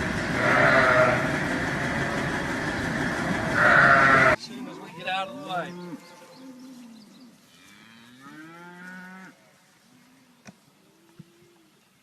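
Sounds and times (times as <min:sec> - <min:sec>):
cattle mooing: 0:00.3 - 0:02.3, 0:03.4 - 0:09.4.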